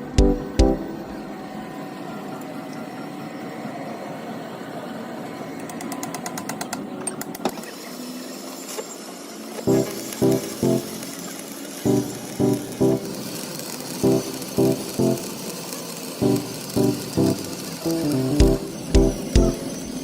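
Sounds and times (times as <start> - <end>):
workshop machine running: 0.0 - 2.1, 9.7 - 20.0.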